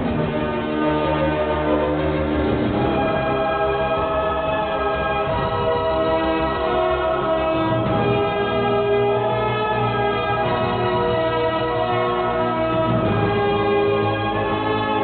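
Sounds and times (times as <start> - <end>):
choir-like held chords: 0.0 - 15.0.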